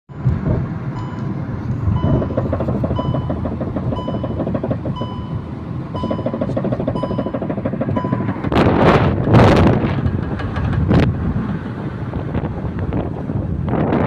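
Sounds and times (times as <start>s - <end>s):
wheel hub knocking and rumbling: 0.1s - 14.0s
short high electronic beep: 2.0s - 2.4s, 5.0s - 7.4s.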